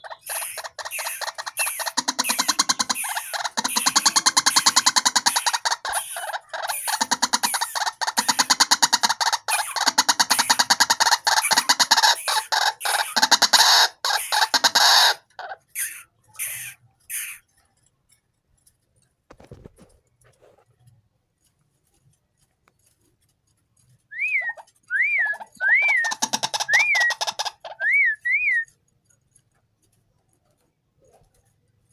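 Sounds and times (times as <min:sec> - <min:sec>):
bird croaking calls: 0:00.0 - 0:17.5, 0:24.1 - 0:28.7
whistled bird notes: 0:24.1 - 0:28.8.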